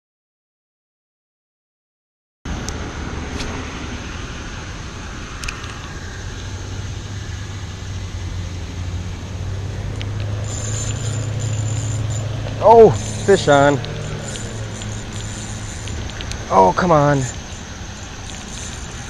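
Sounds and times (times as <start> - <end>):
road traffic rush: 2.5 - 19.0
vehicle passing: 6.0 - 19.0.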